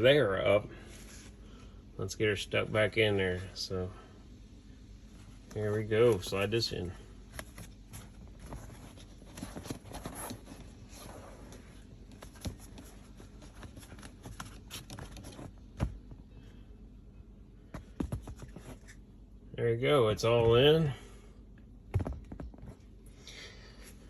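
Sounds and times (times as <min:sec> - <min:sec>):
air filter rustling and clicking: 0:05.3 - 0:16.3, 0:17.7 - 0:19.0.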